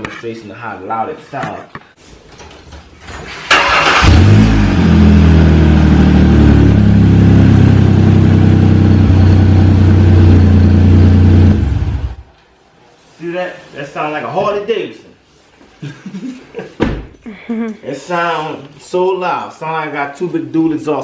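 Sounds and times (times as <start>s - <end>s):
engine cranking: 3.4s - 4.4s
car engine idling loud and deep: 4.1s - 12.2s.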